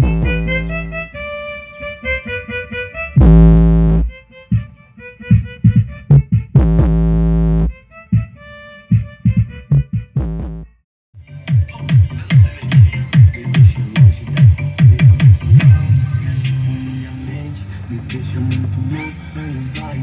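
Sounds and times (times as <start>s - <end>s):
deep bass notes: 0.0s - 1.2s, 3.1s - 4.7s, 5.3s - 8.3s, 9.4s - 19.0s
synth melody: 0.0s - 8.7s.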